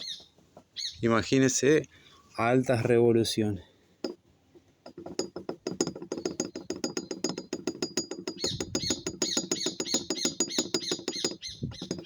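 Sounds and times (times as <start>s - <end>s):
rapid metallic clicking: 4.9s - 12.0s.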